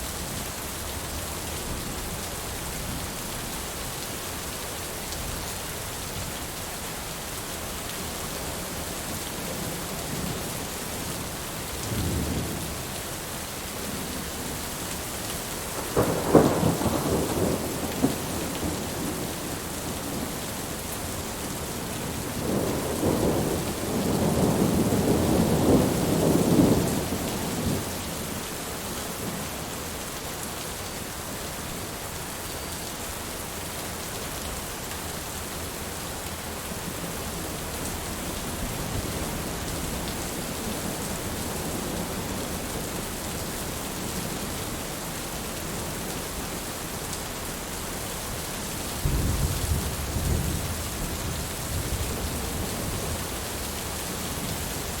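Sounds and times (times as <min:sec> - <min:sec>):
steady rain: 0:00.0 - 0:55.0
thunder rumbling: 0:15.8 - 0:20.4, 0:21.8 - 0:27.9, 0:49.0 - 0:52.9.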